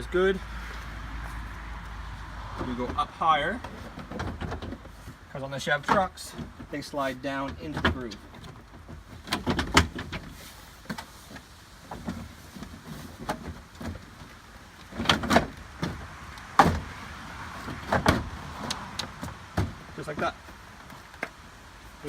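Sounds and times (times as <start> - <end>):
plastic panel knocks and clacks: 7.5 - 10.3, 17.6 - 21.4.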